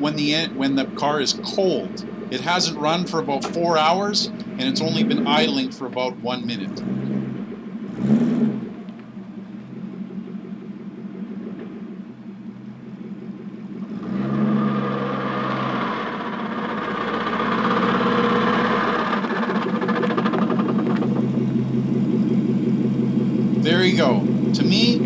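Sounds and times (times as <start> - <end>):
car engine idling: 0.0 - 25.0
loud ratcheting clatter: 15.8 - 21.3.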